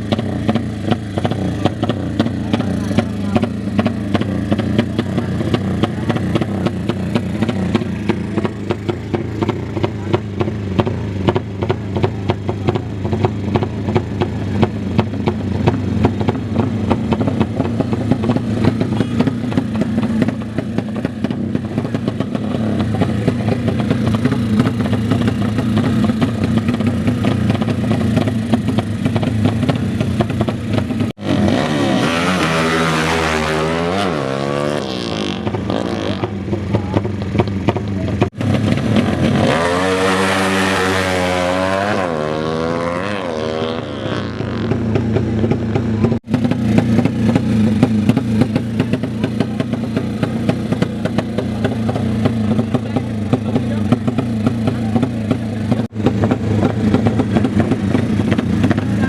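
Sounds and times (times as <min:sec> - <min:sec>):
motorcycle engines revving: 0:00.0 - 0:59.0
popping motorcycle exhaust: 0:00.0 - 0:59.0.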